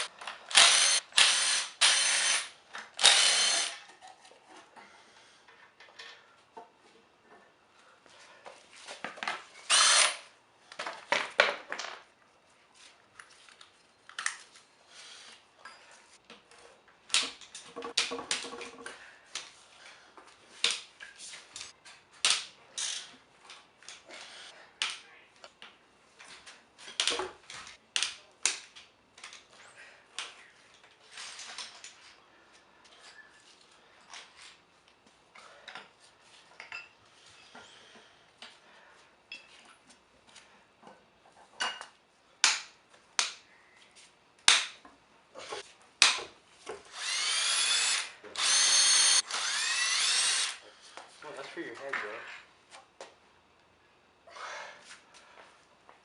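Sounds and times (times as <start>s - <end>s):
power tool bursts: 0.5s - 3.8s, 9.7s - 10.2s, 46.9s - 50.6s.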